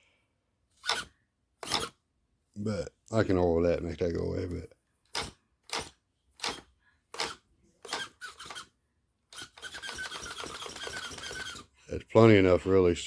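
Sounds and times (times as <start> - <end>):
steering servo buzzing: 0.8 - 2.0, 5.1 - 8.7, 9.3 - 11.7.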